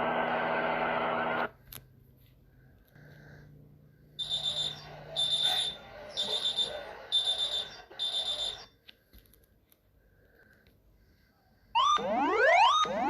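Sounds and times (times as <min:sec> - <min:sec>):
high-pitched alarm beeps: 0:04.2 - 0:08.8.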